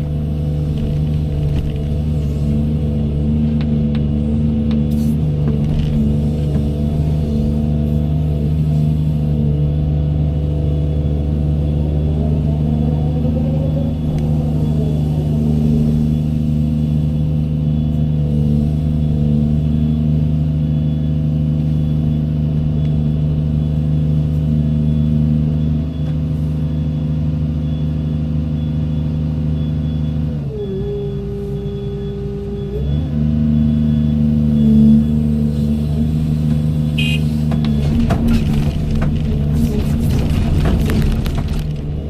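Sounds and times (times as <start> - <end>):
excavator diesel engine running: 0.0 - 42.0.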